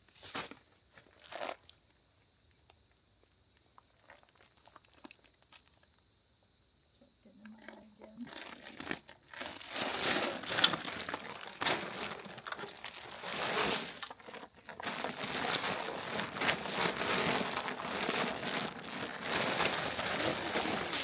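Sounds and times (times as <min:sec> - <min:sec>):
sack crinkling and rustling: 0:00.1 - 0:01.6, 0:08.2 - 0:21.0.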